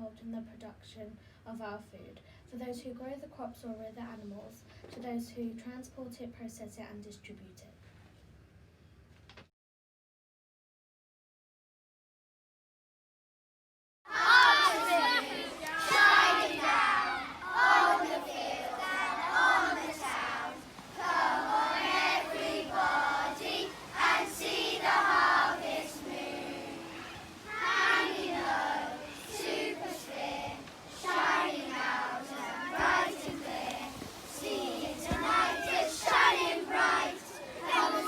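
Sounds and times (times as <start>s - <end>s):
children singing together: 14.1s - 38.0s.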